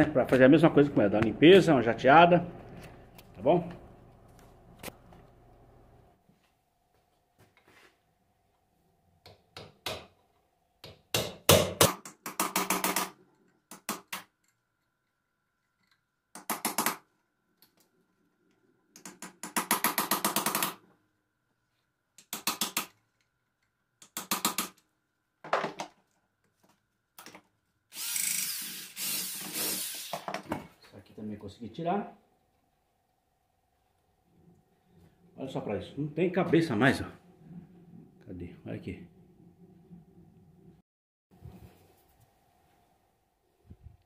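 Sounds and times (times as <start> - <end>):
power tool bursts: 27.9 - 30.3.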